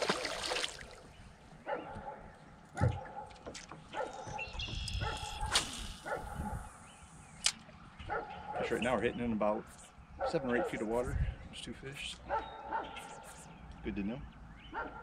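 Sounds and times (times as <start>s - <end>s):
dog barking: 1.6s - 3.3s, 3.9s - 4.4s, 5.0s - 6.6s, 8.1s - 8.8s, 10.2s - 10.8s, 12.3s - 13.2s, 14.7s - 15.0s.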